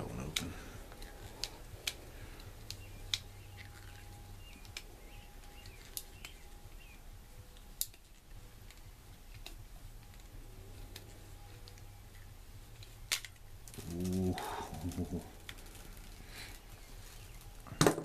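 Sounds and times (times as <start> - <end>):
low steady hum: 0.0 - 18.0
faint high chirps: 2.2 - 9.0.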